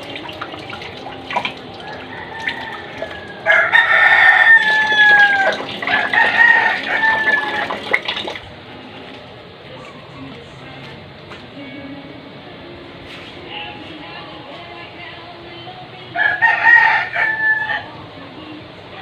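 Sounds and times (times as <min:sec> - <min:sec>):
faint running tap water: 0:00.0 - 0:09.3
rooster crowing: 0:01.8 - 0:08.0, 0:16.1 - 0:18.0.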